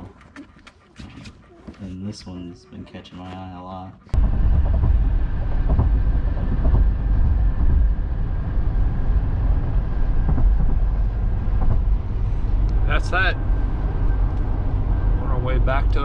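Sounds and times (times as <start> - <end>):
car road and engine rumble: 4.1 - 16.0.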